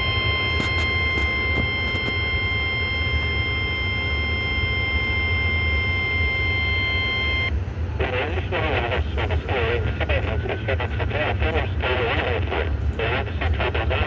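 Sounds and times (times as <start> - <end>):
steady warning alarm tone: 0.0 - 7.6
low hum: 0.0 - 14.0
radio hiss: 8.0 - 14.0.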